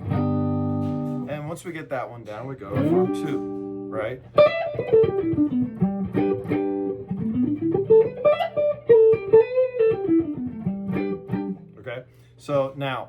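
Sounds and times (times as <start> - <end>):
guitar playing single notes: 0.0 - 1.3, 2.7 - 11.9.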